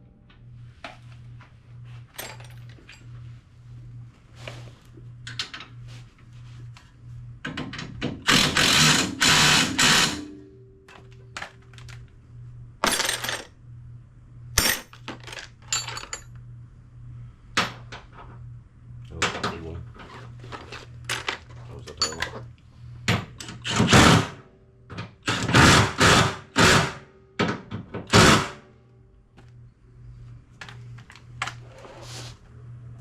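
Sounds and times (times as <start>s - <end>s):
low steady hum: 0.0s - 25.3s, 27.0s - 33.0s
metal tools clanking: 21.1s - 22.4s.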